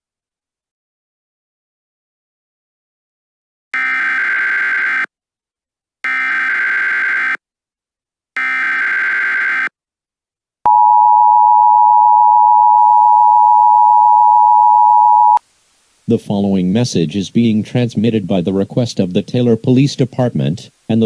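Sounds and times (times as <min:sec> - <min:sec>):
two-tone attention signal: 0:10.7 - 0:15.4.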